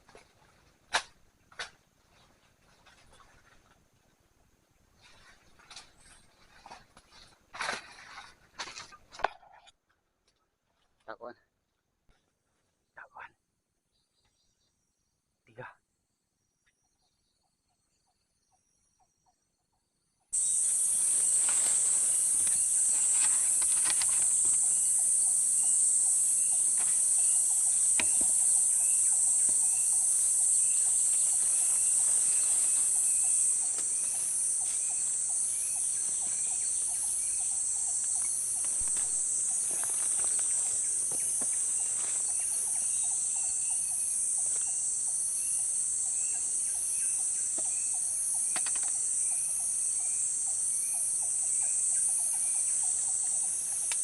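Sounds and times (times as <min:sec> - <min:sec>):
bird chirping: 0:16.4 - 0:54.0
insects shrilling chorus: 0:20.4 - 0:54.0.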